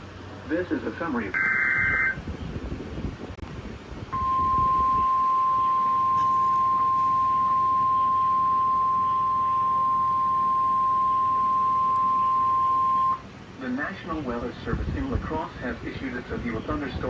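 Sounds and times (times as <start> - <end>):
steady warning alarm tone: 1.3 - 2.2, 4.2 - 13.2.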